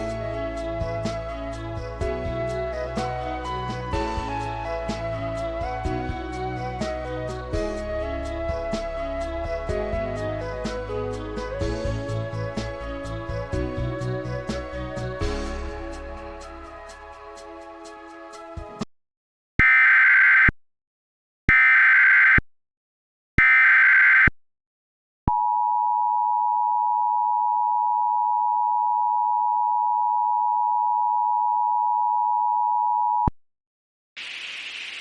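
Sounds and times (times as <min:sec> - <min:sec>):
music: 0:00.0 - 0:18.9
warbling data tones: 0:34.2 - 0:35.0.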